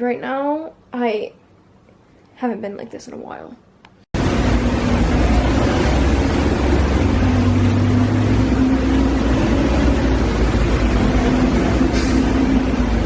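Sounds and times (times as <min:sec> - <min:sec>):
vehicle engine drone: 0:04.2 - 0:13.0.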